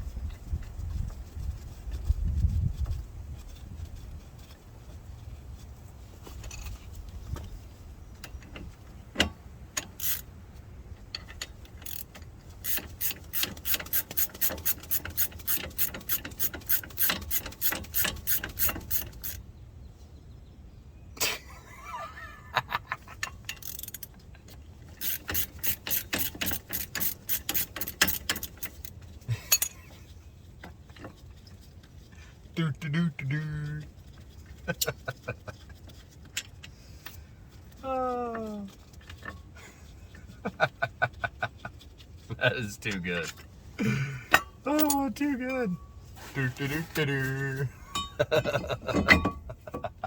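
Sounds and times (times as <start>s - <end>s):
ratchet wrench clicking: 9.8s - 10.3s, 11.1s - 19.4s, 23.4s - 24.1s, 25.0s - 29.7s.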